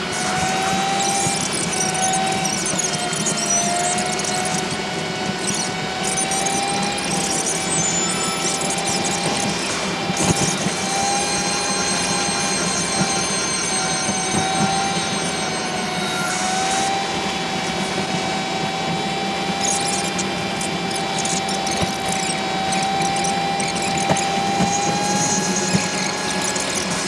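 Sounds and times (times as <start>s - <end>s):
mechanical hum with whine: 0.0s - 27.0s
faint clicks: 19.5s - 27.0s.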